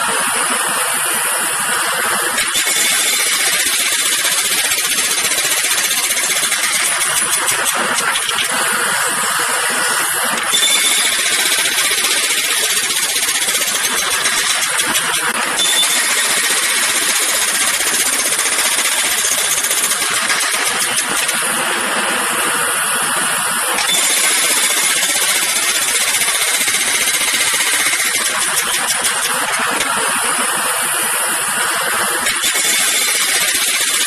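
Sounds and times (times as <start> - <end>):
jackhammer hammering: 0.0 - 34.0.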